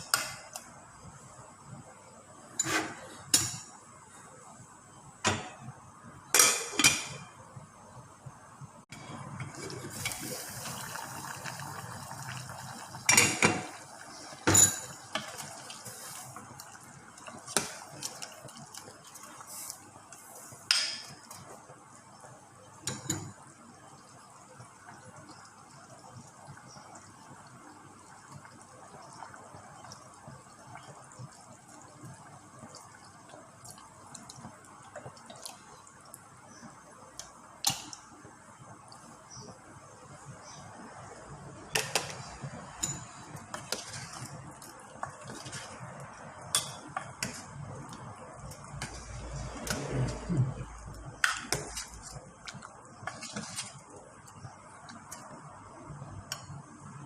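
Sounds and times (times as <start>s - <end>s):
low steady hiss: 0.0s - 57.0s
metal pots clattering: 13.0s - 15.7s
faint drips: 23.9s - 40.6s.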